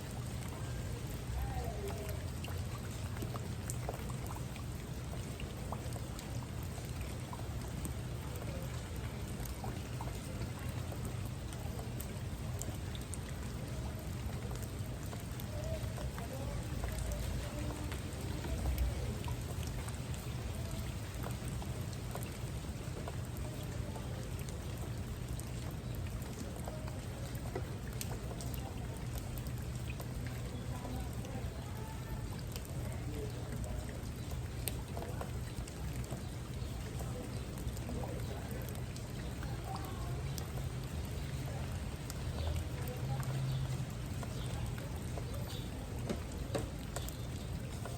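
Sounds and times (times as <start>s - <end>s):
raindrops ticking on a surface: 0.0s - 47.9s
steady rain hiss: 0.0s - 47.9s.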